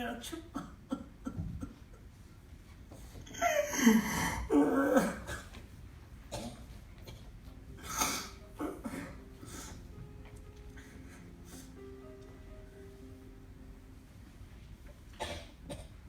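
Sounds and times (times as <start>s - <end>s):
soft sustained music tones: 6.0s - 15.3s.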